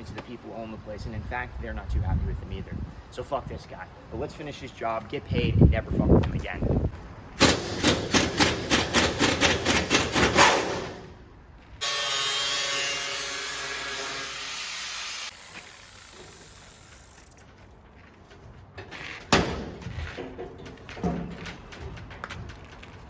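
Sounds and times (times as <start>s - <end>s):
knocks and rattles: 7.4s - 11.0s, 17.4s - 23.0s
power tool whirring: 11.8s - 17.5s.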